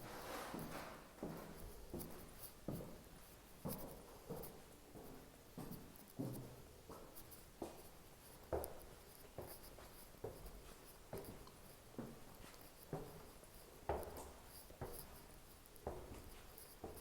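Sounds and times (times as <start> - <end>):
faint footsteps walking: 0.0 - 17.0.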